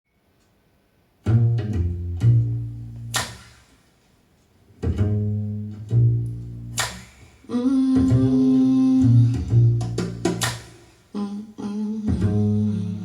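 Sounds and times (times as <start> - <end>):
plucked bass notes: 1.2 - 3.6, 4.8 - 7.3, 7.9 - 10.8, 12.0 - 13.0
plucked guitar notes: 4.8 - 7.2.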